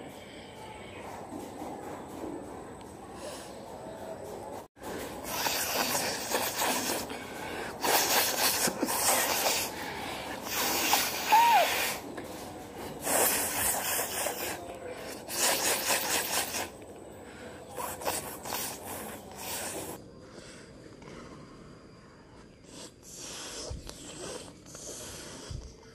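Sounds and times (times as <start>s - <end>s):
woman blowing her nose: 5.2s - 7.1s, 7.8s - 9.7s, 10.4s - 12.0s.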